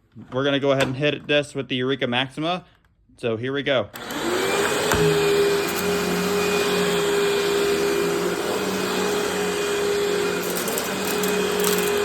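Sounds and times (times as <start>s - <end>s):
vacuum cleaner motor whine: 4.0s - 12.0s.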